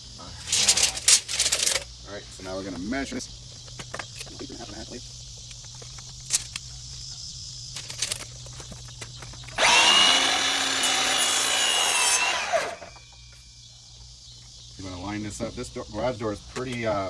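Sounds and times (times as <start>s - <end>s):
power saw cutting: 9.6s - 12.9s.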